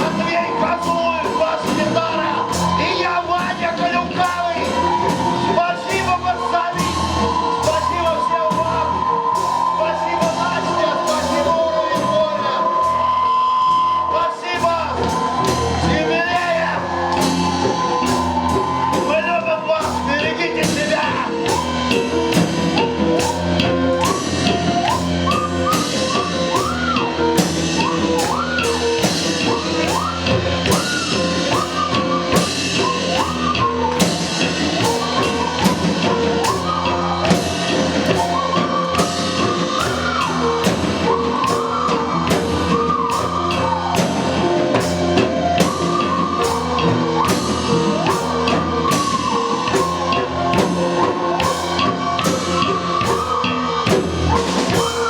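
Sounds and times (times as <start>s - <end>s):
drum kit beat: 0.0s - 55.0s
live rock band playing: 0.0s - 55.0s.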